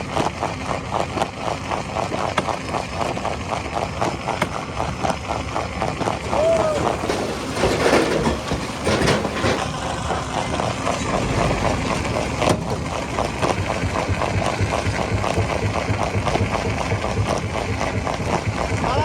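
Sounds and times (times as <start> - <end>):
rock crusher clattering: 0.0 - 19.0
loud knocks: 6.0 - 10.0, 10.9 - 17.4.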